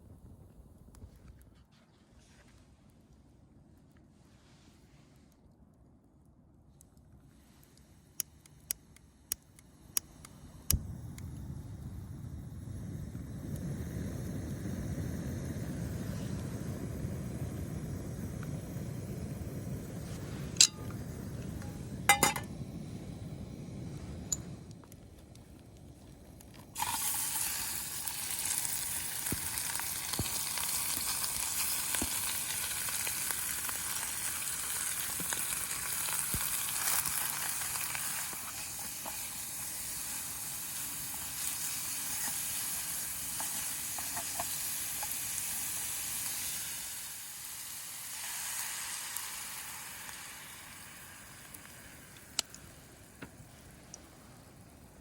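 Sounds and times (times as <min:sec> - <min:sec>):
food sizzling in a hot pan: 0:26.8 - 0:52.4.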